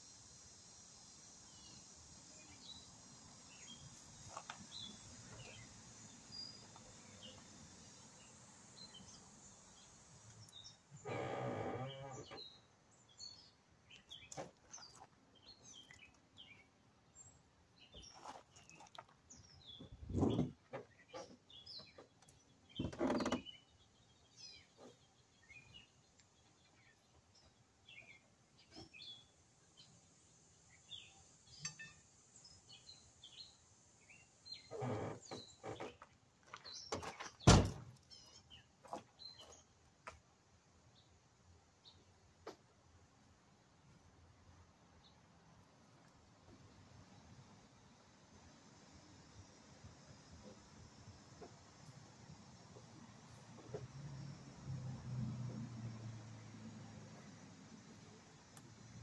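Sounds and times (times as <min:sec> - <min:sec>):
small birds chirping: 0:01.2 - 0:39.8.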